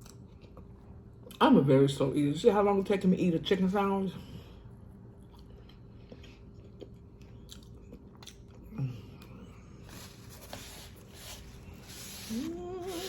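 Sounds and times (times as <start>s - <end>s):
person chewing food: 0.0s - 1.4s, 5.2s - 13.0s.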